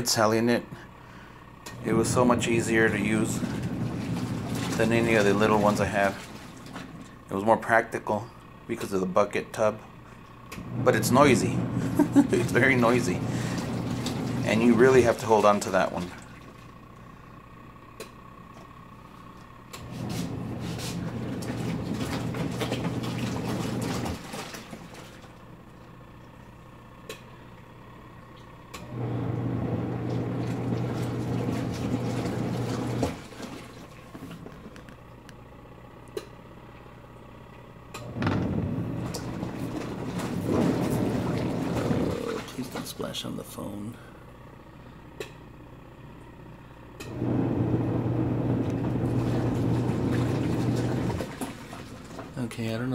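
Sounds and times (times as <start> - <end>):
washing machine motor humming: 0.0 - 52.9
water sloshing: 2.0 - 7.2, 10.8 - 16.8, 19.9 - 25.5, 30.0 - 34.8, 38.1 - 43.1, 48.7 - 52.4.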